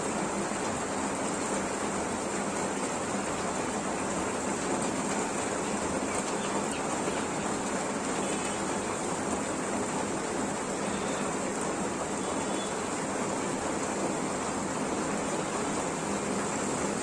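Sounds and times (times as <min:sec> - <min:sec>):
steady rain hiss: 0:00.0 - 0:17.0
faint high bird calls: 0:06.1 - 0:07.6, 0:10.8 - 0:11.4, 0:12.2 - 0:12.8.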